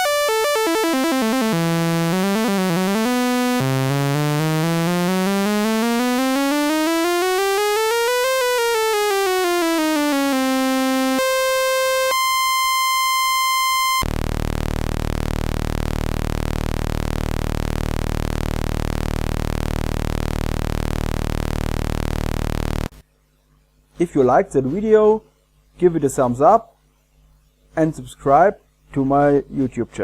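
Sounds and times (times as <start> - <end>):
very deep buzz: 0.0 - 11.2, 14.0 - 22.9
buzzy synthesizer oscillator tone: 0.0 - 22.9
clean steady oscillator tones: 0.0 - 22.9.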